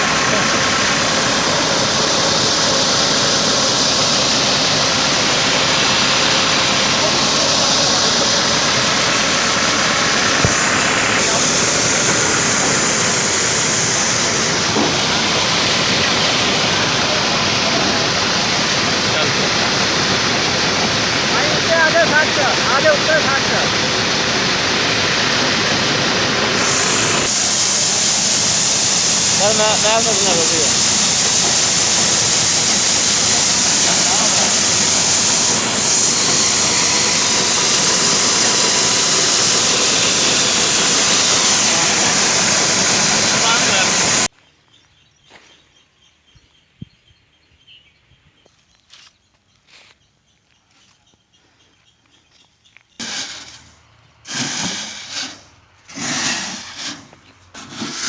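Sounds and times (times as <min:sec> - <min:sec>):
strong hiss: 0:00.0 - 0:44.3, 0:53.0 - 0:58.0
threshing machine rushing noise: 0:00.0 - 0:44.3.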